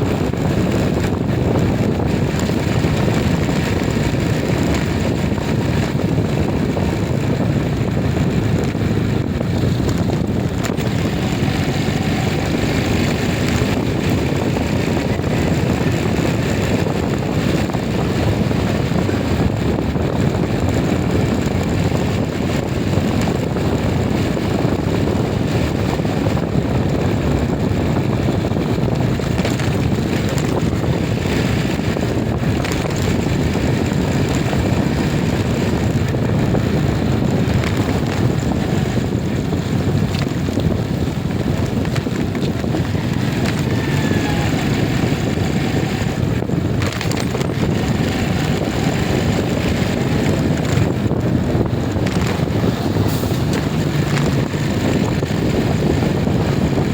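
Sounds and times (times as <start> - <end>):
moving vehicle running noise: 0.0 - 56.9
wind rushing over microphone: 0.0 - 56.9.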